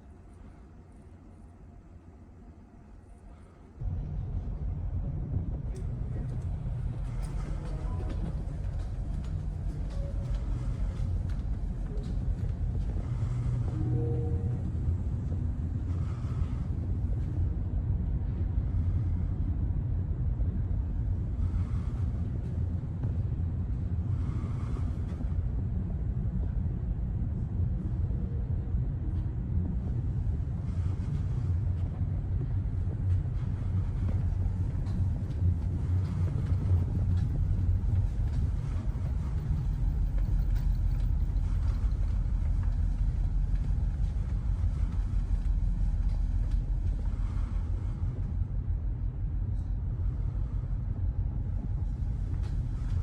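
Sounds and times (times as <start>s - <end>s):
low engine rumble: 3.3s - 53.0s.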